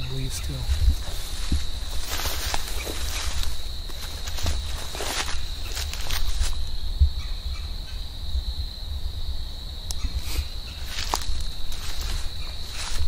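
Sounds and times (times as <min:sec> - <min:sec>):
crickets trilling: 0:00.0 - 0:13.0
footsteps through leaves: 0:00.5 - 0:06.7, 0:10.7 - 0:13.0.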